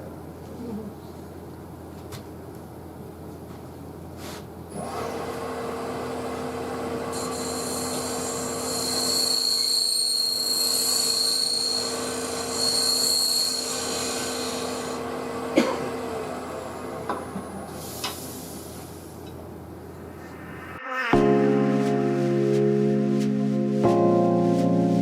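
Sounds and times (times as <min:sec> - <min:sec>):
wood lathe humming: 0:05.7 - 0:17.4
turning tool hissing on wood: 0:07.2 - 0:15.0.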